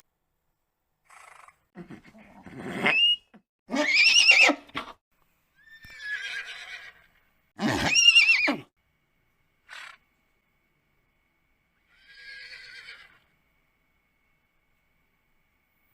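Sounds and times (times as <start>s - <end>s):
horse snort: 1.1s - 3.0s
horse whinnying: 1.1s - 4.9s, 5.6s - 8.7s, 11.9s - 13.2s.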